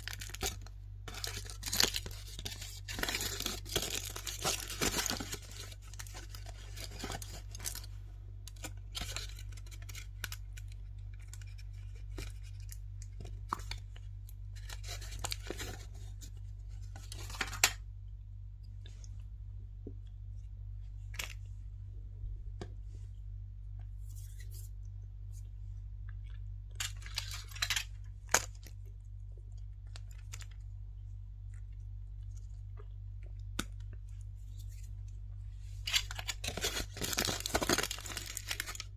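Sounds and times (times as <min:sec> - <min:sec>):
wrapper crinkling and tearing: 0:00.0 - 0:07.9, 0:08.5 - 0:12.8, 0:14.6 - 0:16.2, 0:16.9 - 0:17.8, 0:26.8 - 0:28.6, 0:35.8 - 0:38.9
steady low hum: 0:00.0 - 0:38.9.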